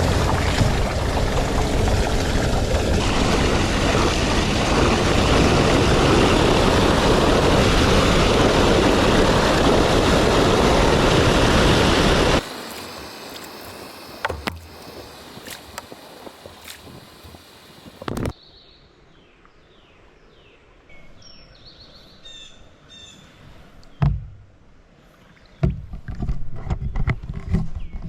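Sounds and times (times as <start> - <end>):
water rushing through a drain: 0.0 - 18.3.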